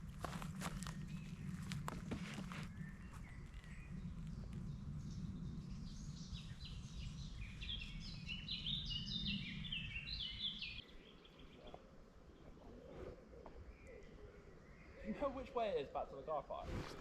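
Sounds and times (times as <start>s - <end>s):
low rumbling background: 0.0s - 10.9s
songbird singing: 0.0s - 16.6s.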